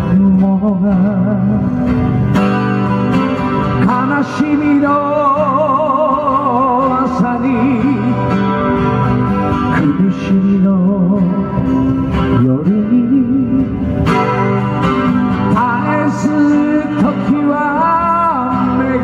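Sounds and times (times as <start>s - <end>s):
guitar accompaniment: 0.0s - 19.0s.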